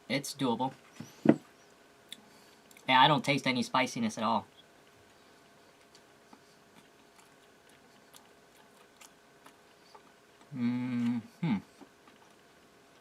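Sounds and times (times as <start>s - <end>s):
person chewing: 4.8s - 13.0s.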